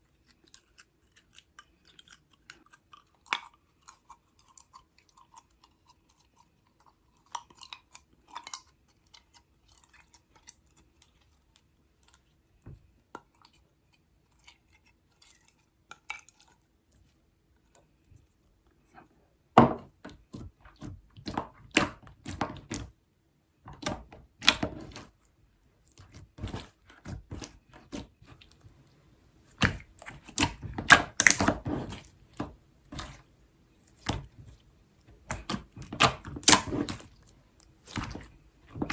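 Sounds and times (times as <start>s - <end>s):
slime clicking and crackling: 29.5s - 33.2s, 35.2s - 38.9s.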